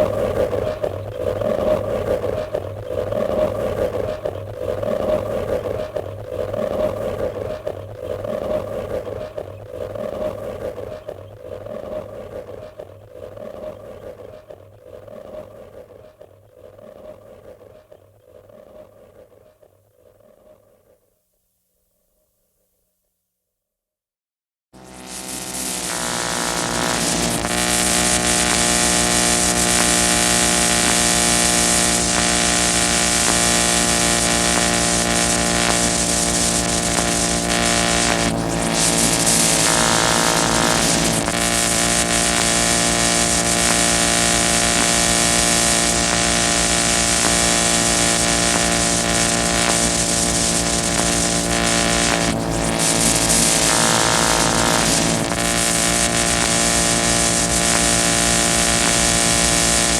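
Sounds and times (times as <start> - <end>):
harsh noise music: 24.8 - 59.9.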